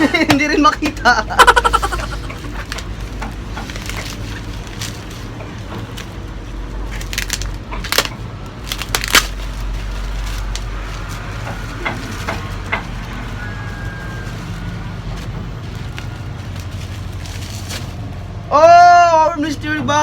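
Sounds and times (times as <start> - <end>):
plastic packaging crackling: 0.0 - 18.5.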